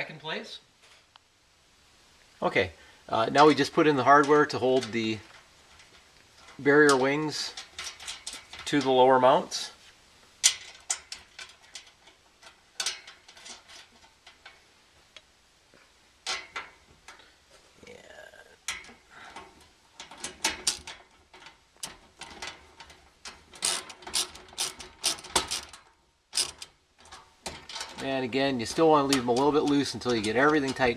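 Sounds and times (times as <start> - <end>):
metal bolts and nuts clinking: 3.2 - 9.8, 10.4 - 14.6, 16.2 - 17.2, 18.7 - 30.9.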